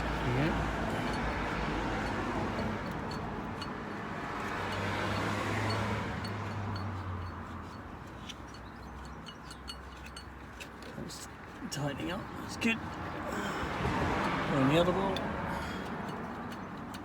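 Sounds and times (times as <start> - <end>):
faint regular ticking: 14.2 - 17.0.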